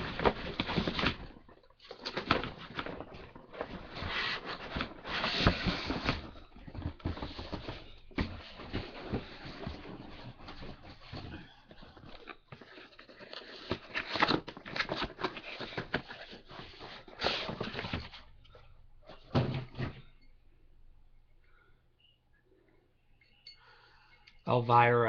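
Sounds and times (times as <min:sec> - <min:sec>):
paper and cardboard rustling: 0:00.0 - 0:18.3.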